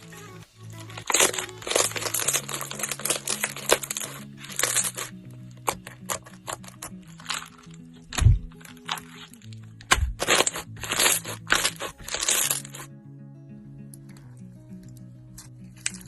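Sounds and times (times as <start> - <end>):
calm background music: 0.0 - 16.0
slime crackling and popping: 1.0 - 12.9.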